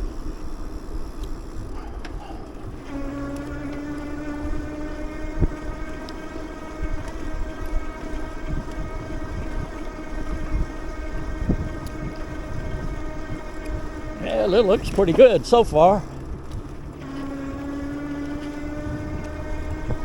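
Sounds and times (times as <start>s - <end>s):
motorized bike motor whine: 0.0s - 20.0s
wind rumble on microphone: 6.8s - 14.2s, 18.6s - 20.0s.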